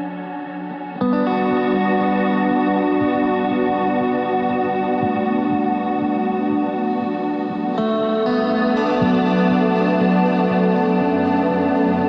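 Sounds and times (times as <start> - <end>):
ambient keyboard music: 0.0 - 12.0.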